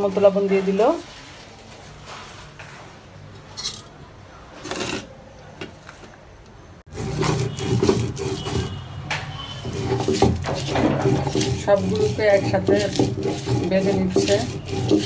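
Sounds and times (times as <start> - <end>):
stone grinding slab and roller: 4.6 - 5.1, 6.9 - 8.8, 9.6 - 15.0.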